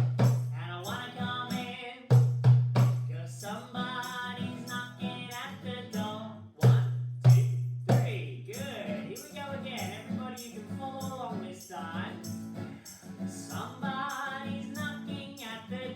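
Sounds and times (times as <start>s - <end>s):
loud drum beats: 0.0s - 0.6s, 2.1s - 3.1s, 6.6s - 8.2s
man singing: 0.5s - 2.3s, 3.0s - 15.9s.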